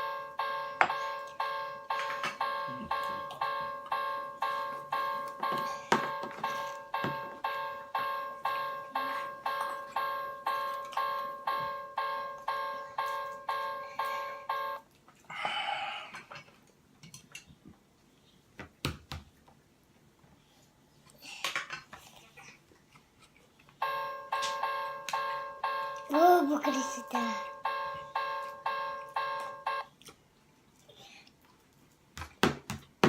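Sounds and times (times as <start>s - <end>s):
electronic crossing bell ringing: 0.0s - 14.8s, 23.8s - 29.9s.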